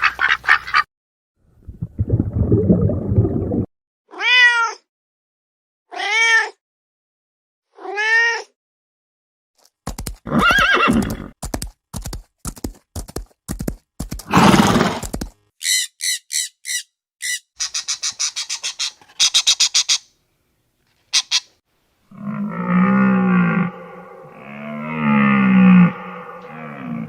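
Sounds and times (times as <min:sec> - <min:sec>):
cat meowing: 0:04.1 - 0:04.8, 0:05.9 - 0:06.6
horse whinnying: 0:10.3 - 0:11.3.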